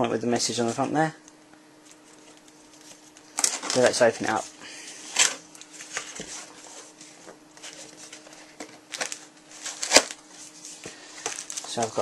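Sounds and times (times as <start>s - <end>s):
faint hum: 0.0s - 12.0s
cardboard rustling: 5.1s - 12.0s.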